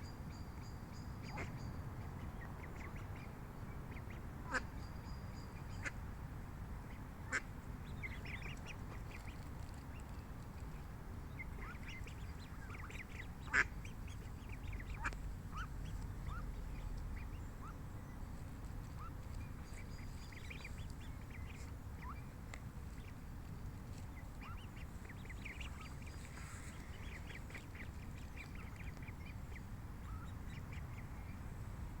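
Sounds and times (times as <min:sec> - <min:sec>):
steady low rumble: 0:00.0 - 0:32.0
ducks calling: 0:11.5 - 0:17.8.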